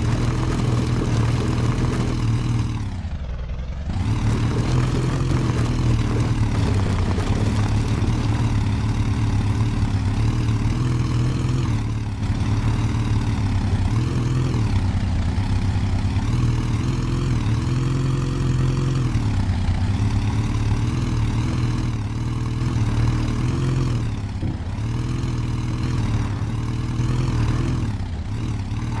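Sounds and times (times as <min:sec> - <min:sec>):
off-road vehicle engine revving: 0:00.0 - 0:03.1, 0:03.8 - 0:14.9, 0:20.0 - 0:29.0.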